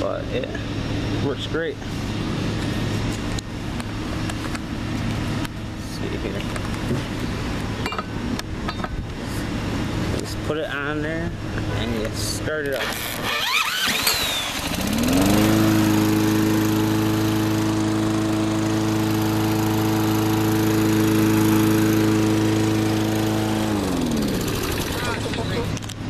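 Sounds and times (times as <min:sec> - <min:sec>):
lawnmower engine running: 0:00.0 - 0:10.2, 0:12.7 - 0:26.0
power drill spinning: 0:12.7 - 0:15.9.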